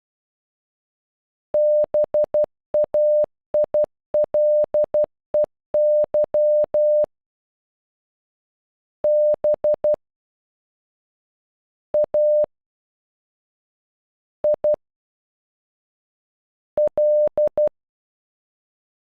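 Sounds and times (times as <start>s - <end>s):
morse code beeps: 1.6s - 7.1s, 9.1s - 10.0s, 12.0s - 12.5s, 16.8s - 17.7s.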